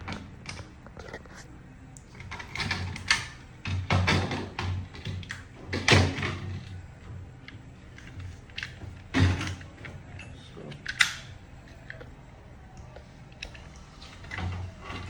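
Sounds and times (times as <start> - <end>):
plastic parts knocking and clicking: 10.8 - 12.1.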